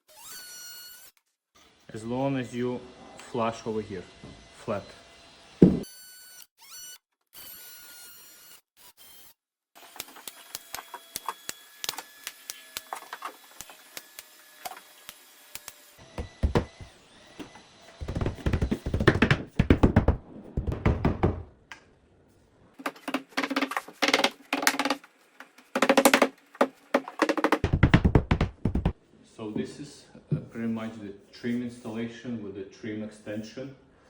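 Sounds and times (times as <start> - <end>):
knocks and thumps on wood: 5.6 - 5.8, 16.2 - 16.9, 18.0 - 21.5, 22.8 - 29.0.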